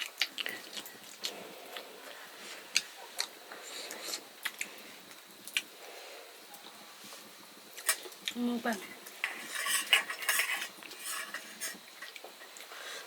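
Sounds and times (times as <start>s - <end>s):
chewing: 0.0s - 5.7s
utensils tapping dishes: 9.2s - 11.8s.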